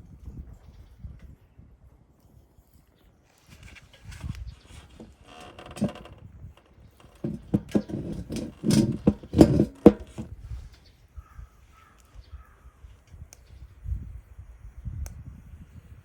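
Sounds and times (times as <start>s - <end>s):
firewood knocking and clattering: 4.0s - 6.2s, 7.0s - 10.3s.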